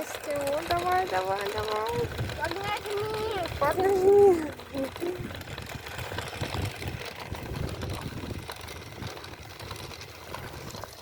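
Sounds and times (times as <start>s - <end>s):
toy car electric motor: 0.0s - 11.0s
low rumbling noise: 0.1s - 11.0s.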